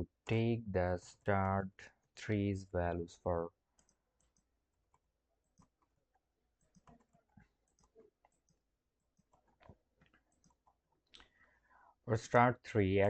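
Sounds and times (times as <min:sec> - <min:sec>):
mouse and keyboard clicks: 0:03.8 - 0:05.9, 0:06.6 - 0:10.8.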